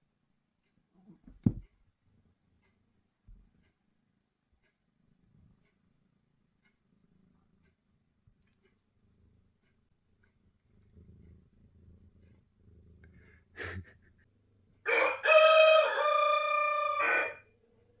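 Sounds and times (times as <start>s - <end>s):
rooster crowing: 14.9s - 17.5s.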